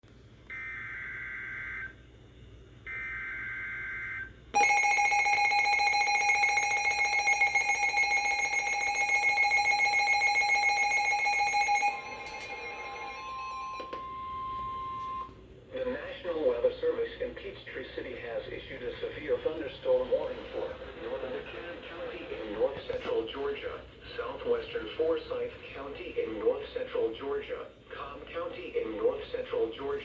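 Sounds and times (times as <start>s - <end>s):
two-tone pulsing alert signal: 2.9s - 15.3s.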